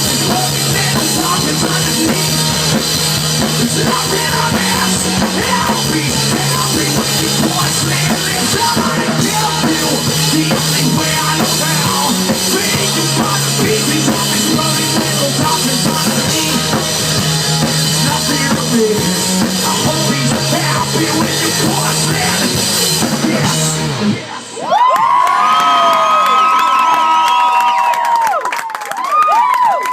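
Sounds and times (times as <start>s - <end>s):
drum kit: 0.0s - 24.2s
live rock band playing: 0.0s - 24.6s
audience cheering: 24.4s - 29.9s
audience whistling: 24.6s - 29.9s.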